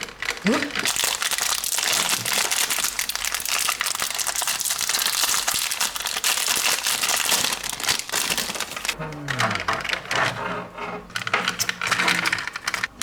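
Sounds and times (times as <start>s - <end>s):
plastic packaging crinkling: 0.0s - 10.1s.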